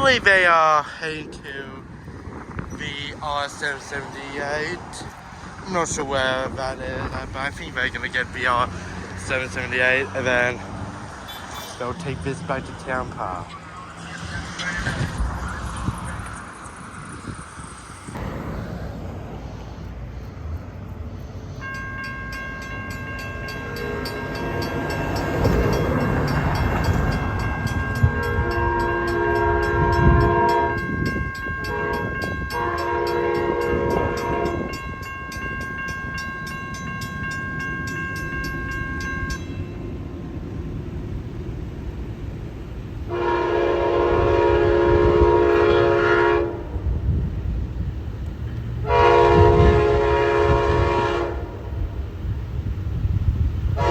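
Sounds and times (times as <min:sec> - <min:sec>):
train rumbling: 0:00.0 - 0:53.9
crossing warning bell ringing: 0:02.1 - 0:18.8, 0:21.5 - 0:40.8
train horn blasts: 0:11.2 - 0:12.0, 0:23.5 - 0:35.9, 0:43.1 - 0:47.0, 0:48.8 - 0:51.9.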